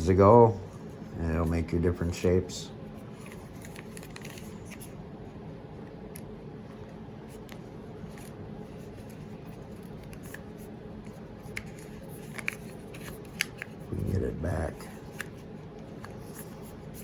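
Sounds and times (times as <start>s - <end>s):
low background hum: 0.0s - 17.0s.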